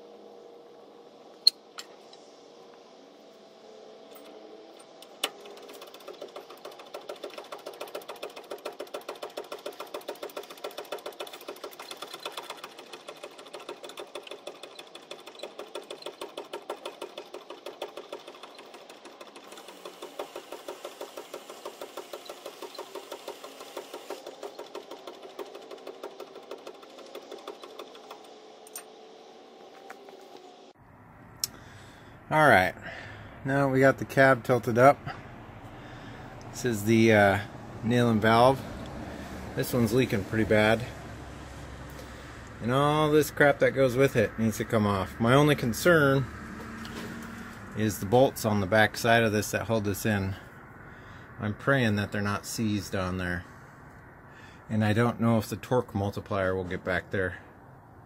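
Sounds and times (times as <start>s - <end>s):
hydraulic pump clattering: 4.1s - 28.9s.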